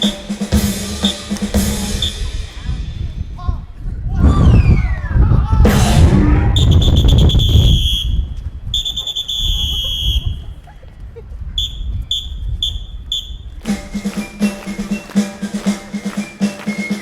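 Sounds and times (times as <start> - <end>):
wind rumble on microphone: 2.5 - 8.8, 9.5 - 13.6.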